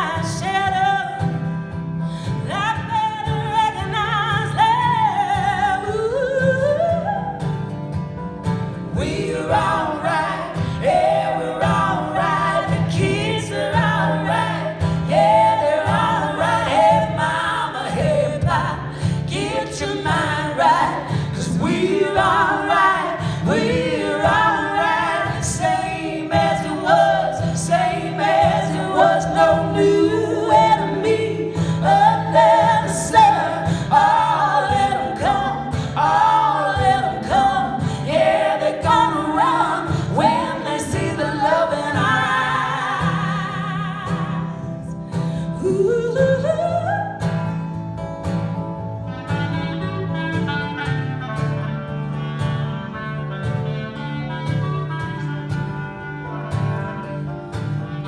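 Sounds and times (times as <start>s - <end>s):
voices singing together: 0.0s - 1.5s, 8.7s - 47.7s.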